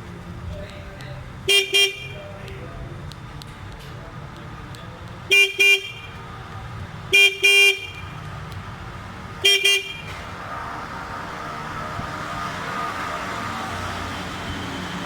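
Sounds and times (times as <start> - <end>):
bus engine rumble: 0.0 - 15.0
vehicle horn double beeps: 1.5 - 2.3, 5.3 - 6.2, 7.1 - 8.2, 9.4 - 10.2.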